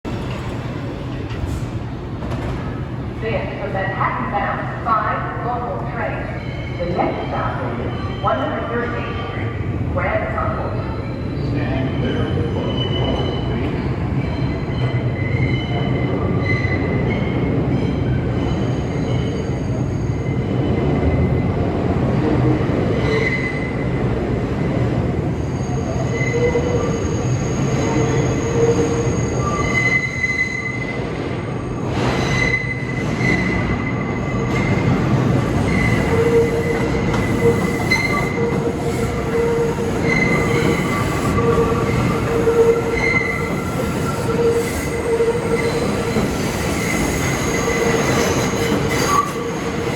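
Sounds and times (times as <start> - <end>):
subway train rumbling on rails: 0.0 - 49.9
train wheels squealing: 10.7 - 21.3, 23.0 - 23.8, 25.4 - 49.9.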